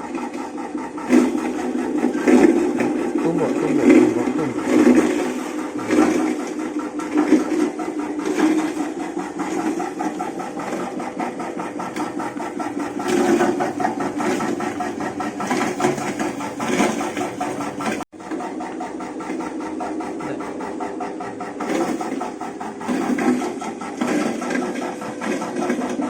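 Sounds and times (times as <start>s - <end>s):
chopping machine mechanical rattle: 0.0s - 26.0s.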